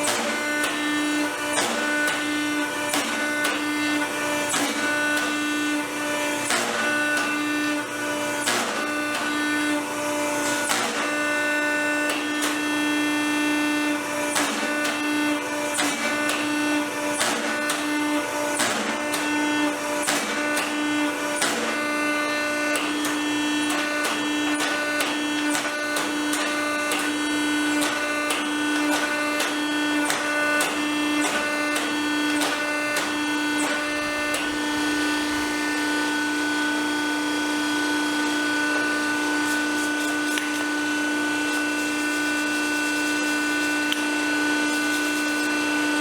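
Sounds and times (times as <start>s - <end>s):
steady machine hum: 22.1s - 46.0s.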